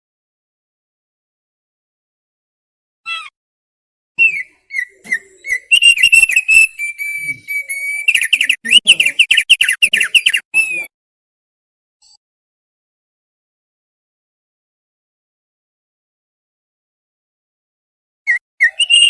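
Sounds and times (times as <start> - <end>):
bird singing whistles and chirps: 4.2 - 10.9, 18.3 - 19.0.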